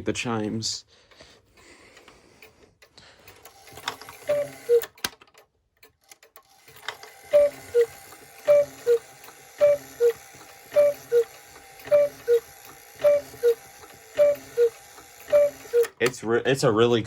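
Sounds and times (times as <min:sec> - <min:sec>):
clock mechanism clicks: 0:01.6 - 0:16.2
cuckoo clock calling: 0:03.5 - 0:05.0, 0:06.5 - 0:16.0.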